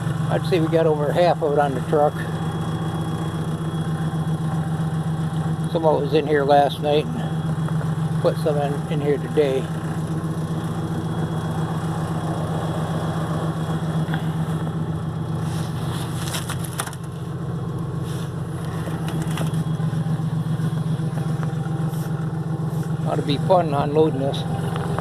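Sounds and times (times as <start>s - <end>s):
pickup truck engine idling: 0.0s - 25.0s.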